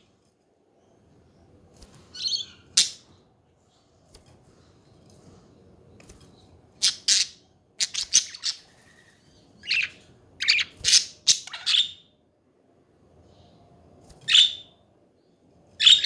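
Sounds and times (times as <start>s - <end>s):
budgerigars chattering and squawking: 6.8s - 8.8s, 9.6s - 12.0s.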